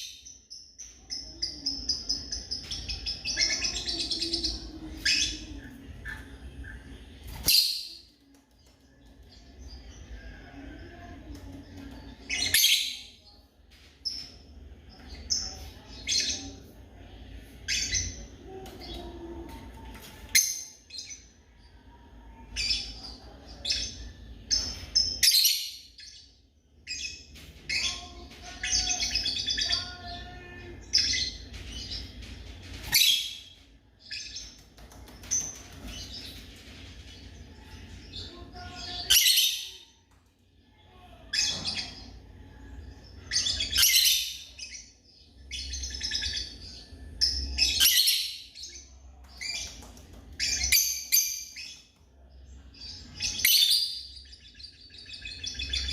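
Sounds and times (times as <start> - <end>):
lovebirds chirping: 40.8 - 55.9.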